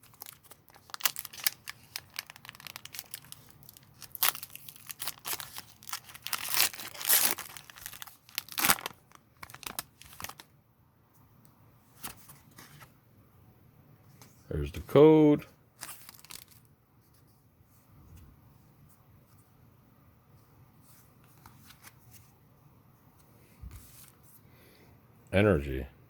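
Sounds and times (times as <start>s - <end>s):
foil wrapper crinkling and tearing: 0.0s - 10.5s, 15.8s - 16.7s.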